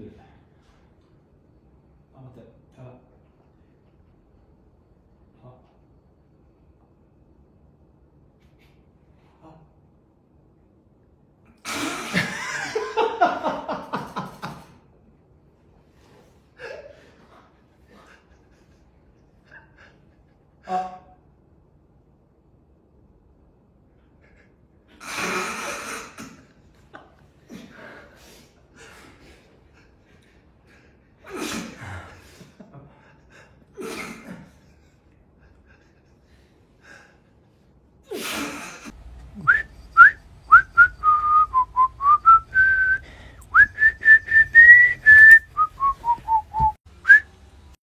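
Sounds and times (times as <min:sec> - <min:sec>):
person whistling a tune: 0:39.4 - 0:47.3.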